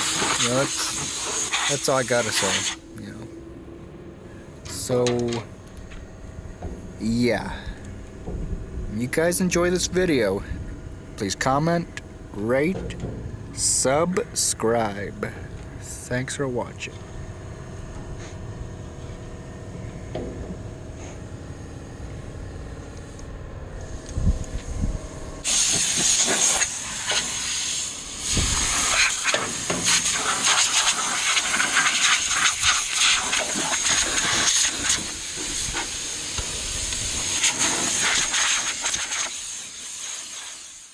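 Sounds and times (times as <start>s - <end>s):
compressed air hissing: 0.0s - 2.9s, 25.4s - 40.9s
low machine hum: 0.0s - 38.0s.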